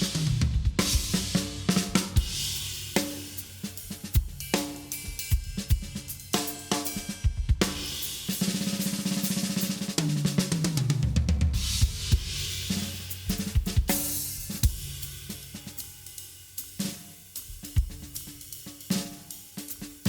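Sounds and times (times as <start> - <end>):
fast tom roll: 0.0 - 2.6
drum kit playing: 0.0 - 20.0.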